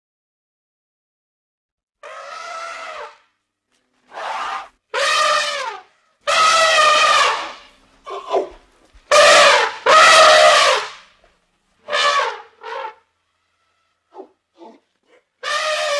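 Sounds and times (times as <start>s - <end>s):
elephant trumpeting: 2.0s - 3.3s, 4.0s - 11.1s, 11.8s - 15.9s.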